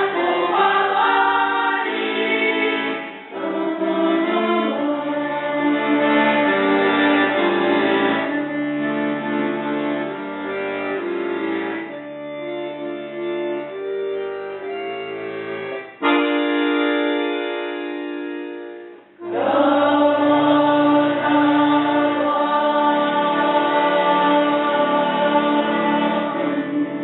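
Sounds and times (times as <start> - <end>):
folk choir singing: 0.0 - 8.3, 19.2 - 27.0
accordion chords: 0.0 - 27.0.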